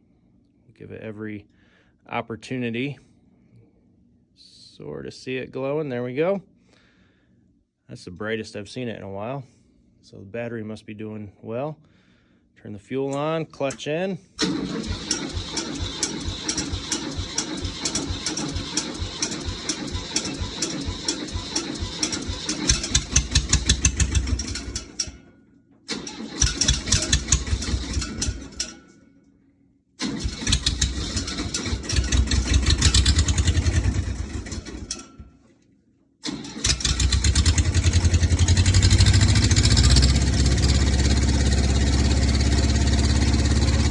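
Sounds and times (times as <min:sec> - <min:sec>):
diesel tractor engine cranking: 0:13.1 - 0:25.2, 0:25.9 - 0:28.8, 0:30.0 - 0:35.3, 0:36.2 - 0:43.9
tractor engine running: 0:14.4 - 0:25.2, 0:25.9 - 0:28.8, 0:30.0 - 0:35.2, 0:36.2 - 0:43.9.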